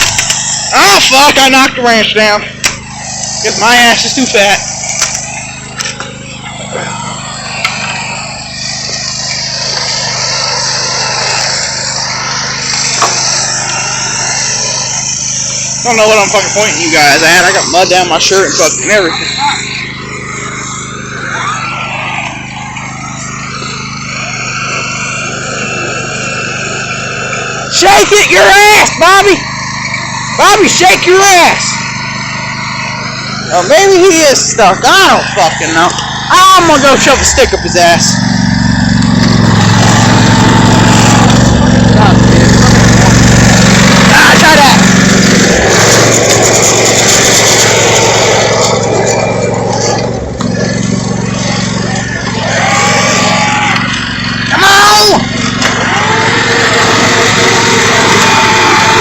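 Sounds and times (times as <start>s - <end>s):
riding lawn mower engine: 0.0s - 59.0s
loud rushing noise: 31.4s - 59.0s.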